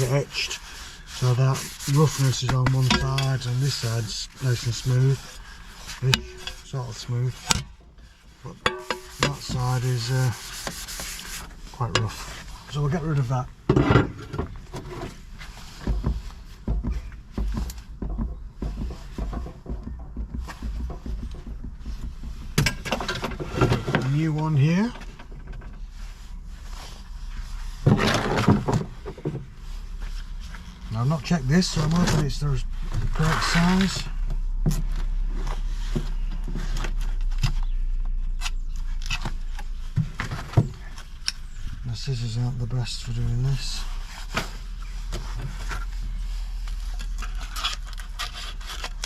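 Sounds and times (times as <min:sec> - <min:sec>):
steady low hum: 0:00.0 - 0:49.0
objects clicking and scraping: 0:01.1 - 0:25.9, 0:44.2 - 0:49.0
handling noise thumps: 0:13.6 - 0:26.4.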